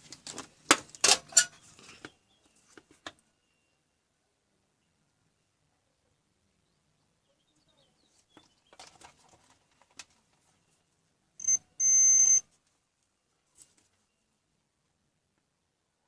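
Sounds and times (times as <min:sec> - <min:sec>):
electronic beeper: 0:11.4 - 0:12.4.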